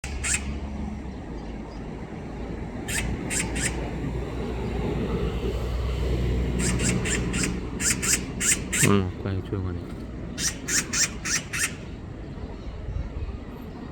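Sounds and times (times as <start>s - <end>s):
magpie chatter calls: 2.8s - 4.0s, 6.5s - 9.0s, 10.3s - 12.1s.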